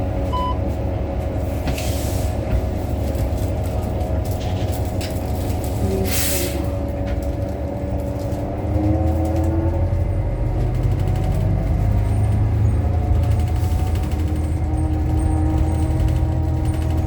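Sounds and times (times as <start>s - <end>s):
bus drivetrain hum with whine: 0.0s - 17.0s.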